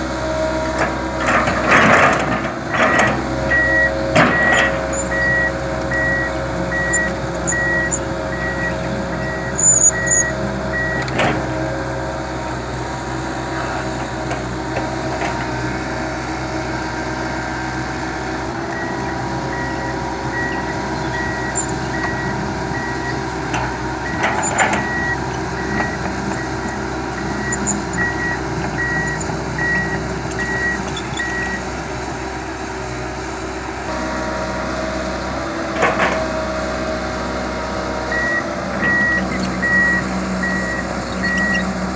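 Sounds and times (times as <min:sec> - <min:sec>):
diesel engine running: 0:00.0 - 0:41.9
travel alarm beeping: 0:01.2 - 0:11.5, 0:18.6 - 0:31.7, 0:38.1 - 0:41.9.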